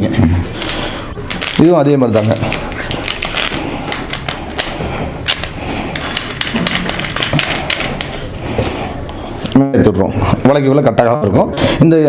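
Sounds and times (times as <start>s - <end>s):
hard plastic parts clicking: 0.6s - 8.7s.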